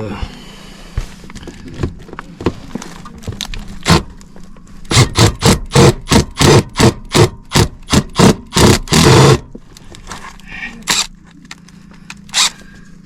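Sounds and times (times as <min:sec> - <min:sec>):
cordless drill bursts: 0:04.9 - 0:09.5.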